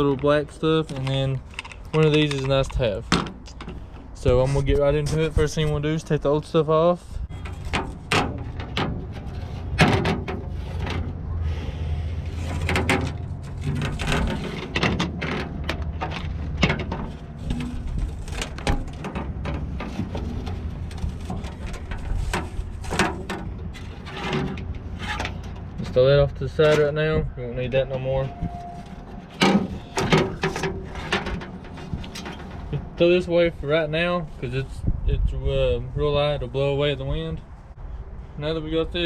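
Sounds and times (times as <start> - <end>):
scraping and rustling: 7.2 - 27.0, 27.7 - 34.9.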